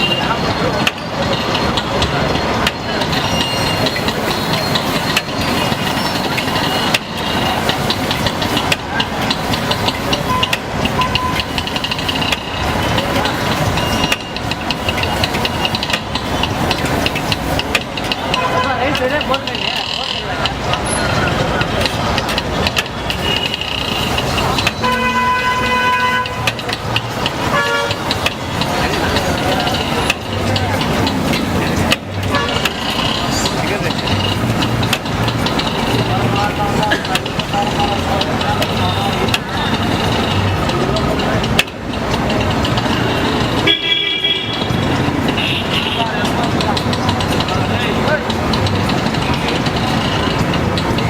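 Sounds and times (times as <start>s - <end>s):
rapid clinking: 0.0s - 51.0s
street traffic noise: 0.0s - 51.0s
vehicle engines idling: 0.0s - 51.0s
vehicle horns honking: 18.3s - 19.0s, 23.0s - 26.7s, 27.4s - 29.2s, 32.2s - 33.4s, 42.9s - 46.3s.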